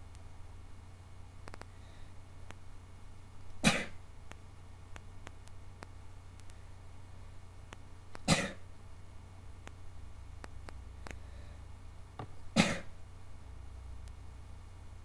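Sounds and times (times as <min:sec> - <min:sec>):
person sneezing: 0:12.6 - 0:12.9.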